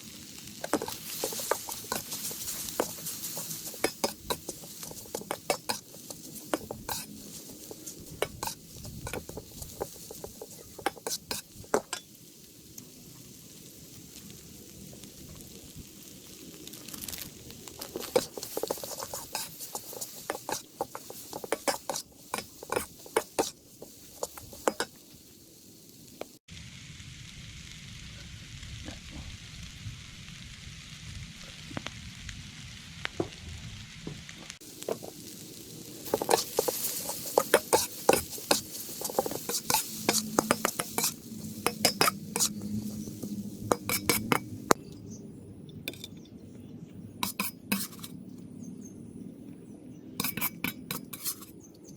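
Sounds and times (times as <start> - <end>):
noodles sizzling in a wok: 0.0 - 44.8, 47.2 - 48.1, 50.2 - 51.5
spatula scraping a pan: 0.4 - 12.1, 17.8 - 25.1, 36.0 - 44.7, 47.2 - 48.2, 50.2 - 51.5.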